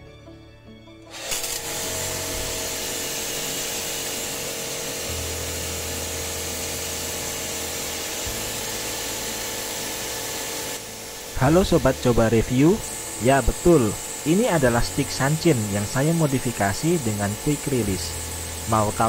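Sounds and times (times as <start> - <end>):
motor-driven machine hissing and humming: 1.1 - 19.0.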